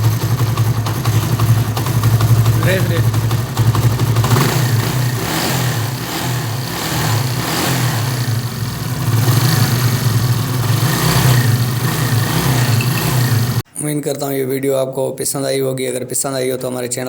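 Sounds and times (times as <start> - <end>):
motorcycle engine running: 0.0 - 13.6.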